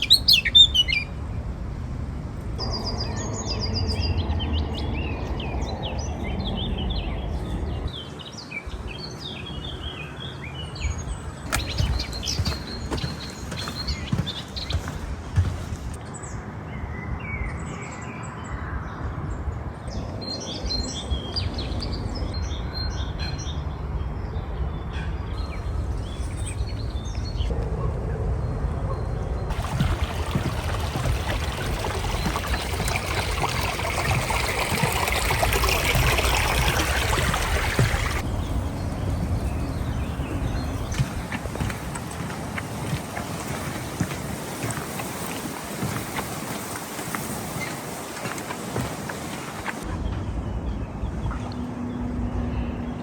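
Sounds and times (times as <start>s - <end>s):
songbirds chirping: 0.0s - 53.0s
running water: 10.8s - 16.0s, 29.5s - 49.9s.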